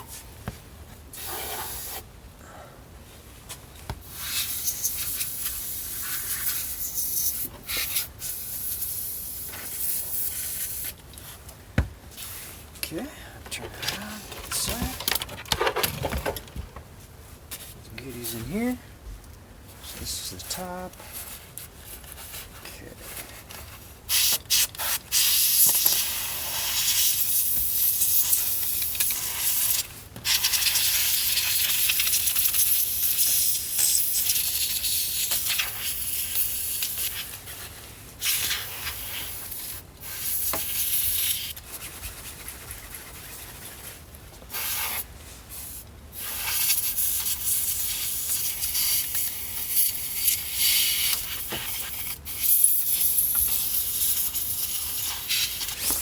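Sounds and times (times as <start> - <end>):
compressed air spray hissing: 1.2 - 2.1, 4.0 - 11.0, 24.1 - 37.6, 38.2 - 41.6, 44.5 - 56.0.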